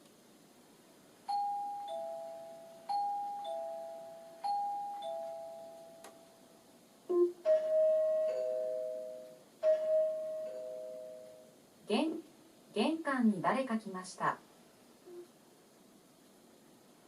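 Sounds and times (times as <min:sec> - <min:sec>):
doorbell ding-dong chime: 0:01.3 - 0:06.3, 0:07.1 - 0:11.4.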